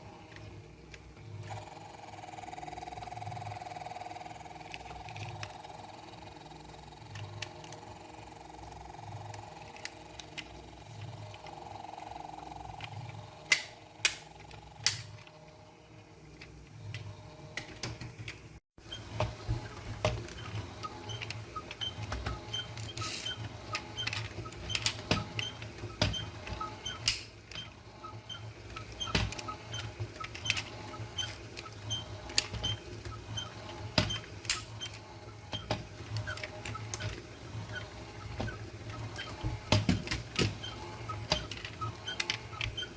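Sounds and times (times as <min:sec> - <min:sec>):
toy cars clicking and ticking: 0:20.4 - 0:42.9.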